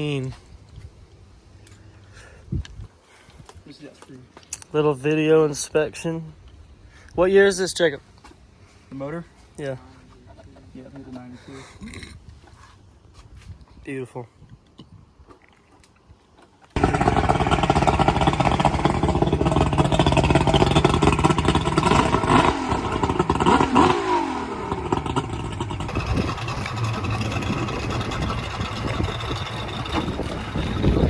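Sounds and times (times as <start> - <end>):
engine running at speed: 16.8 - 31.0.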